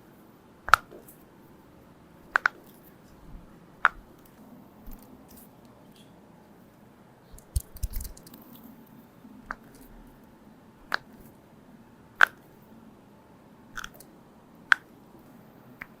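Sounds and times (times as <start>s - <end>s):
thumps and clicks from body positioning: 7.4s - 8.4s.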